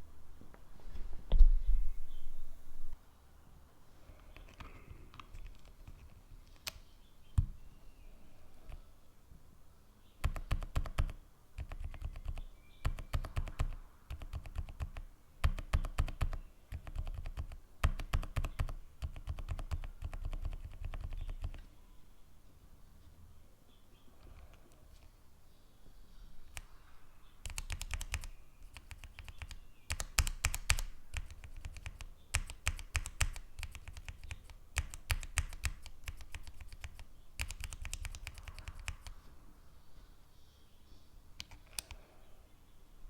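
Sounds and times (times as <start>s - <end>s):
mechanical keyboard typing: 4.4s - 6.8s, 10.2s - 21.6s, 27.4s - 39.2s.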